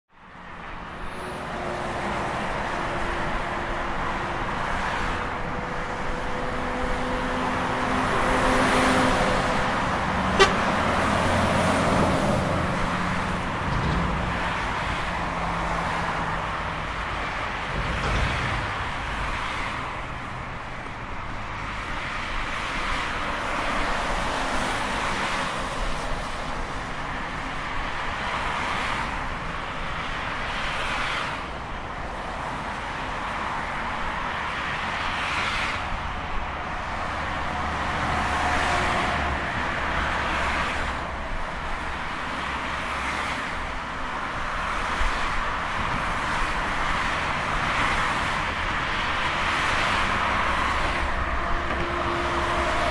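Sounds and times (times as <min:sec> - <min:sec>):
highway traffic passing: 0:00.1 - 0:52.9
steady horn tone: 0:10.3 - 0:10.9, 0:51.2 - 0:52.9.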